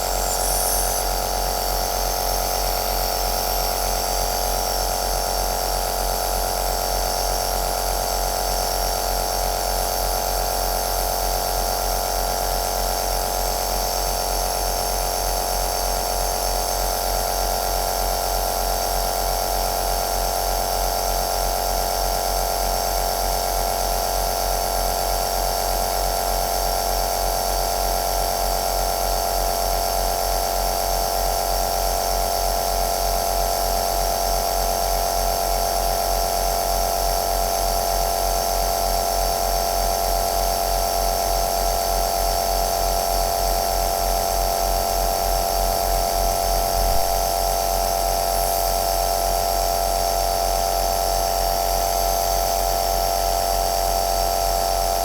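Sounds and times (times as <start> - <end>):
nebulizer motor humming: 0.0 - 3.8.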